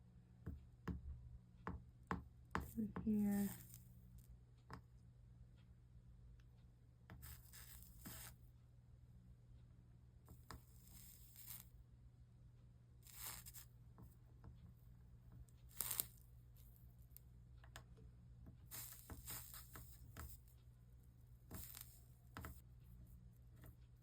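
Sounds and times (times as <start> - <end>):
low steady hum: 0.0 - 24.0
soldering sizzling hisses: 2.7 - 3.8, 7.2 - 8.4, 10.5 - 11.7, 13.0 - 13.7, 15.6 - 16.3, 18.6 - 20.5, 21.4 - 22.6.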